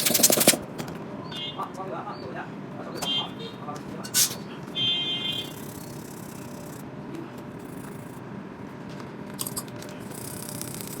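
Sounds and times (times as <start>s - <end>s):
tool scraping adhesive: 0.0s - 0.6s, 5.4s - 6.8s
short squeak: 4.1s - 4.5s.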